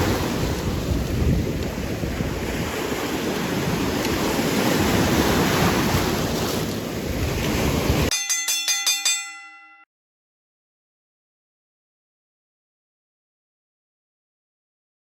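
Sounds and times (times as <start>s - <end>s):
wind buffeting microphone: 0.0s - 8.1s
surf: 0.0s - 9.8s
bell-like metallic chimes: 8.1s - 9.9s.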